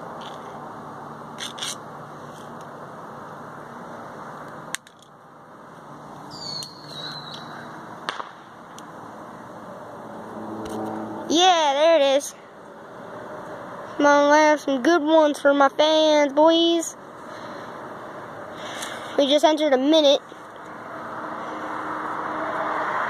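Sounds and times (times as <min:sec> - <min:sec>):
traffic hiss: 0:00.0 - 0:23.0
distant firework bangs: 0:08.0 - 0:08.6.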